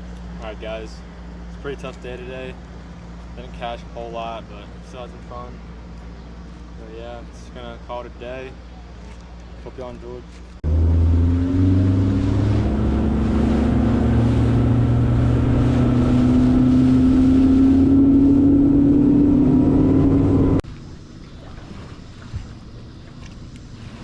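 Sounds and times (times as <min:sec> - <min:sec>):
faint wind: 0:00.0 - 0:24.0
water: 0:00.0 - 0:24.0
outboard motor running: 0:10.4 - 0:24.0.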